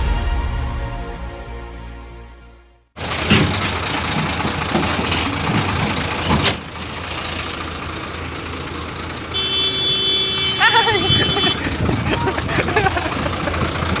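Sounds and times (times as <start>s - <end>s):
background music: 0.0s - 2.9s
heavy machine engine running: 3.0s - 14.0s.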